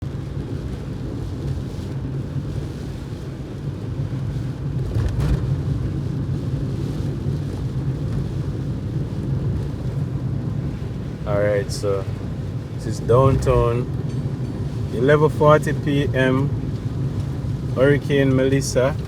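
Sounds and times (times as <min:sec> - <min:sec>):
car road and engine rumble: 0:00.0 - 0:19.0.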